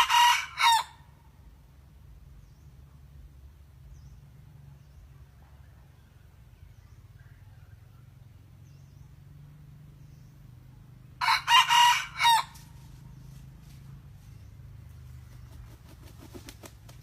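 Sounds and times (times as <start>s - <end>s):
rooster crowing: 0.0s - 1.0s, 11.2s - 12.8s.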